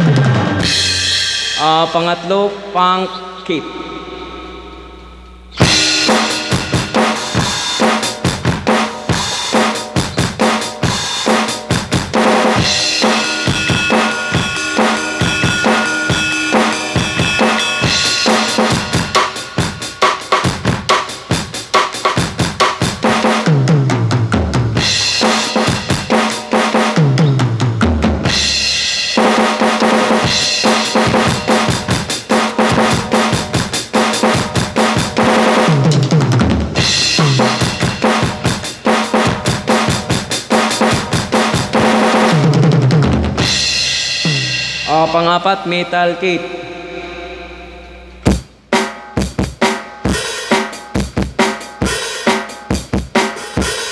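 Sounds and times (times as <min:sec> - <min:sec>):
electronic drum kit beat: 0:00.0 - 0:02.4, 0:05.5 - 0:45.5, 0:48.2 - 0:53.9
tom fills: 0:00.0 - 0:23.4.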